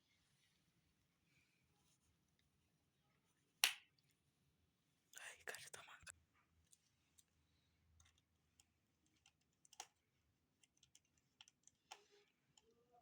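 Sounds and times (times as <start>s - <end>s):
faint small clicks and taps: 5.6s - 12.8s.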